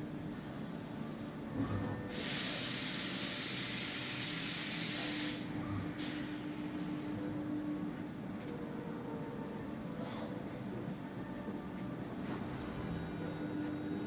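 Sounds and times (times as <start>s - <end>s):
faint machine hum: 0.0s - 14.0s
machine hiss: 2.1s - 7.1s.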